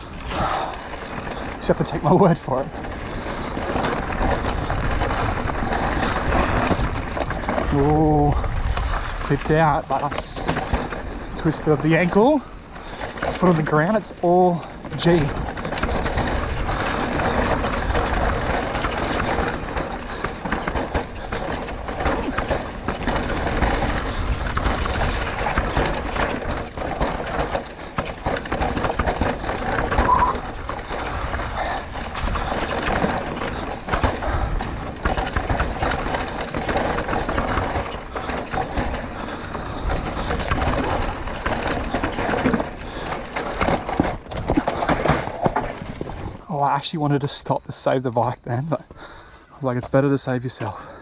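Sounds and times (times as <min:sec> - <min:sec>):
bike rattling over rough ground: 0:00.0 - 0:51.0
wind noise on microphone: 0:02.8 - 0:11.8, 0:14.8 - 0:46.4.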